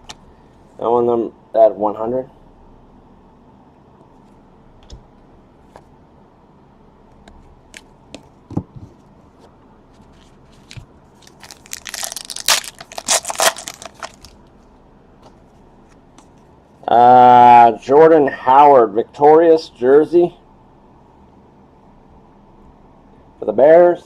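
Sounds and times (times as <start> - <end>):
wrapper crinkling and tearing: 10.6 - 14.4.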